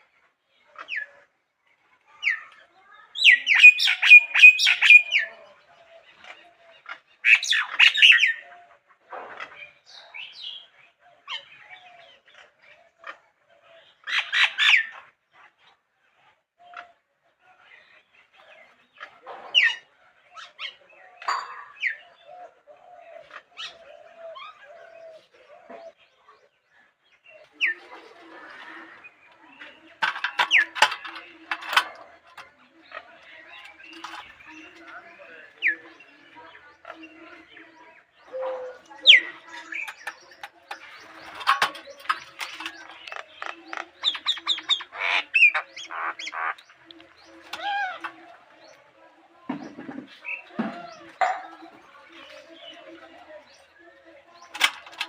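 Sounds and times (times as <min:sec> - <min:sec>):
birds chirping: 0:02.2 - 0:15.8, 0:17.5 - 0:55.0
harsh raspy bird call: 0:38.7 - 0:46.8.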